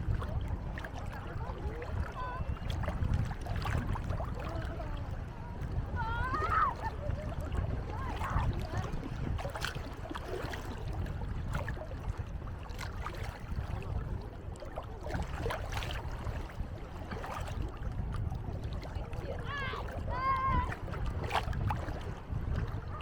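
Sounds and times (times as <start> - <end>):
sea water splashing: 0.0 - 23.0.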